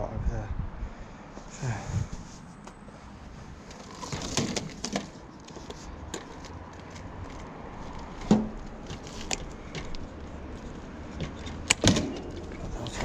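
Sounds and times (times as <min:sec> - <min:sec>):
objects clicking and knocking: 0:03.7 - 0:12.7.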